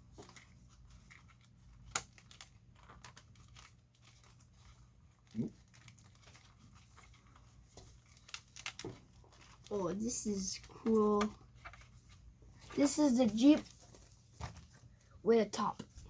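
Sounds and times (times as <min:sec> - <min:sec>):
fabric rustling and crinkling: 0:00.0 - 0:16.0.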